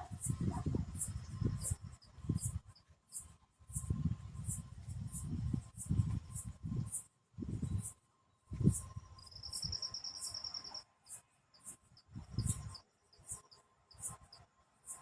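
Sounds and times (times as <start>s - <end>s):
crickets chirping: 8.6s - 15.0s.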